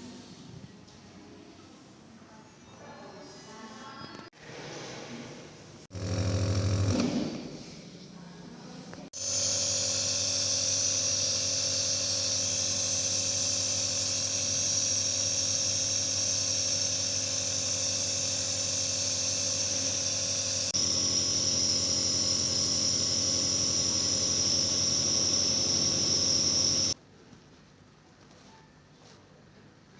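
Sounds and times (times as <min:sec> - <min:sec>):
nebulizer motor hum and hiss: 0:06.0 - 0:07.4, 0:09.2 - 0:27.0.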